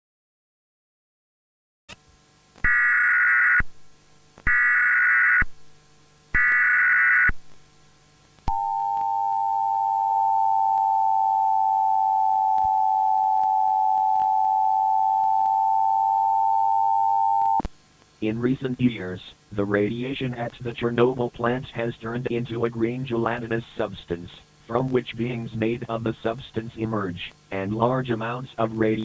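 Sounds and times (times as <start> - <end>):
two-tone attention signal: 8.5 - 17.6
warbling data tones: 8.5 - 17.6.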